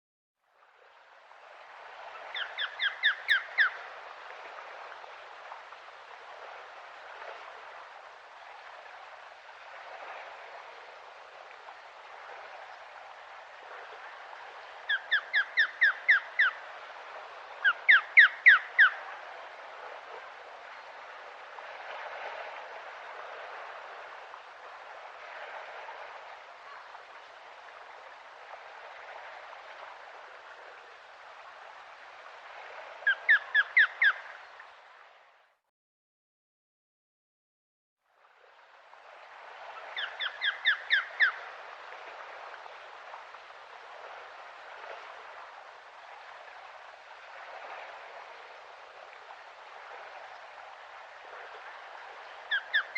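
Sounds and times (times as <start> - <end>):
bird whistled calls: 2.3 - 3.8, 40.0 - 41.4, 52.5 - 52.9.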